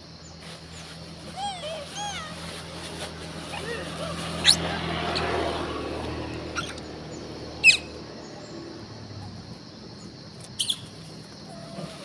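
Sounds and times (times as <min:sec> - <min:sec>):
monkeys squeaking: 0:01.3 - 0:05.6, 0:06.4 - 0:06.9, 0:07.6 - 0:08.0, 0:10.5 - 0:12.0.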